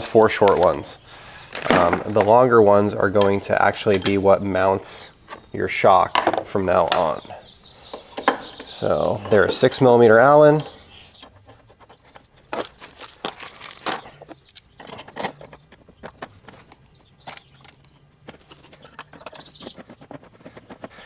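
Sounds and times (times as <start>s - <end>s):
allen key and bolts clicking: 3.2s - 4.3s.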